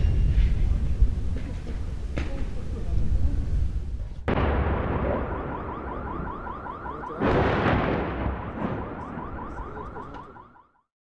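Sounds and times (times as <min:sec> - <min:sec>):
heavy explosion: 0:00.0 - 0:10.0
smaller blast: 0:04.3 - 0:10.1
car alarm chirping: 0:05.2 - 0:10.9.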